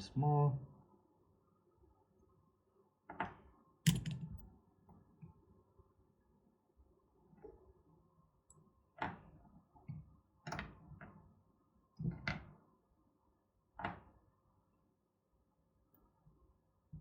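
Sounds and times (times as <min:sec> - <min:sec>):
small tools knocking on workbench: 0:03.9 - 0:04.4.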